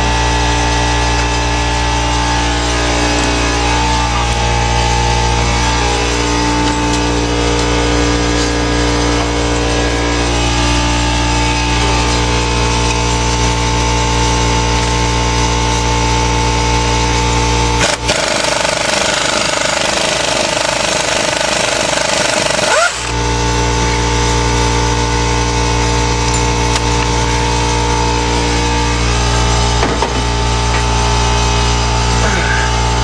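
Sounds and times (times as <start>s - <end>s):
rising whine: 0.0s - 18.1s, 22.6s - 33.0s
power tool humming: 0.0s - 33.0s
harsh hissing tool noise: 17.8s - 23.2s.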